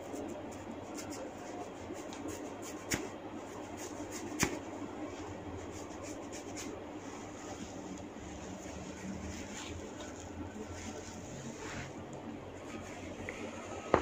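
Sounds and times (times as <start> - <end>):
hands rustling in hair: 3.6 - 12.1.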